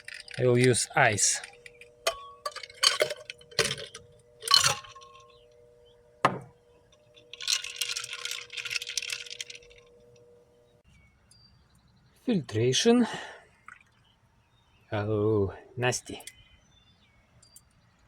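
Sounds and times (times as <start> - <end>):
ice clinking in glass beaker: 1.2 - 5.3, 7.2 - 10.0.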